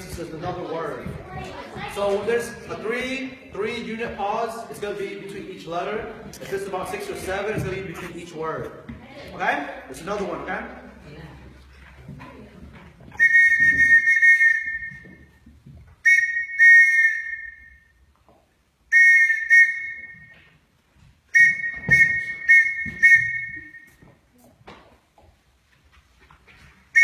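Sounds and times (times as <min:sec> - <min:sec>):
whistle blasts in morse code: 0:13.2 - 0:15.2, 0:16.0 - 0:18.0, 0:18.9 - 0:20.4, 0:21.4 - 0:24.0.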